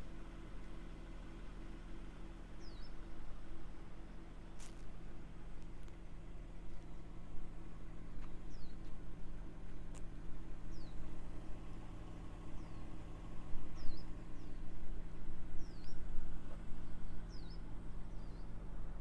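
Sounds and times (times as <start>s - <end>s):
small birds chirping: 2.5s - 3.1s, 8.1s - 9.0s, 9.6s - 11.6s, 12.3s - 14.7s, 15.6s - 18.7s.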